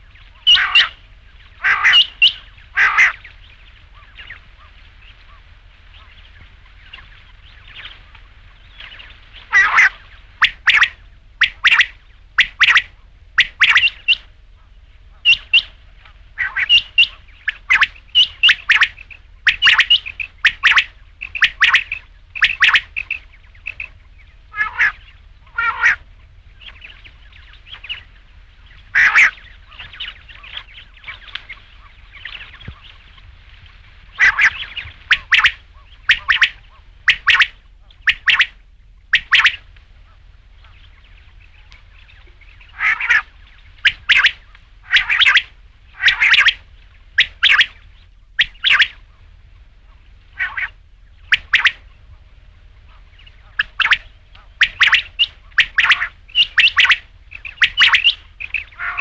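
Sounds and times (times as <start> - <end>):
quail calling: 0.0 - 59.0.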